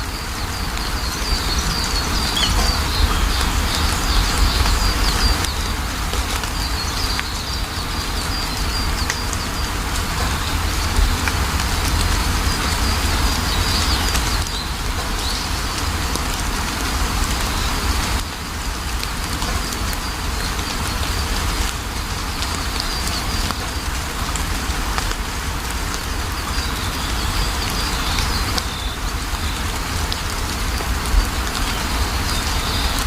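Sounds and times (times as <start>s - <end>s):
steady rain falling: 0.0s - 33.0s
birds chirping: 0.1s - 10.8s.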